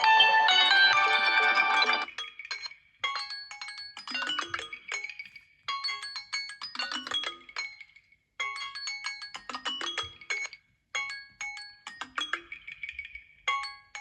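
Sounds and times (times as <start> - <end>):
smartphone ringtone melody: 0.0 - 4.7.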